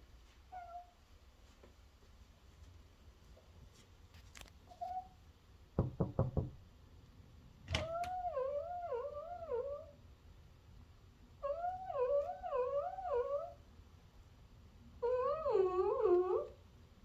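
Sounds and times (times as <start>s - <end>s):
dog warbling cries: 7.9s - 10.0s, 11.4s - 13.6s, 15.0s - 16.6s.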